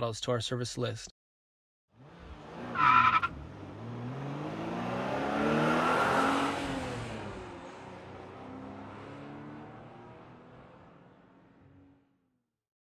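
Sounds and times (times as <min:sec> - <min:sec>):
car engine accelerating: 0:02.0 - 0:12.1.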